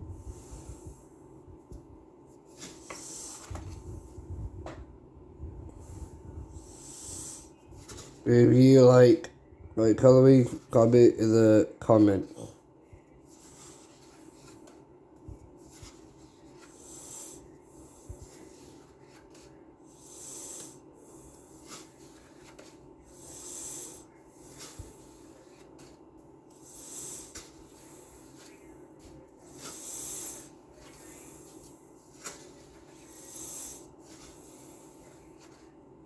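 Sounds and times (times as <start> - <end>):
rustling and rubbing on microphone: 0.0 - 8.5, 13.2 - 17.4, 27.0 - 35.8
steady low hum: 0.0 - 36.0.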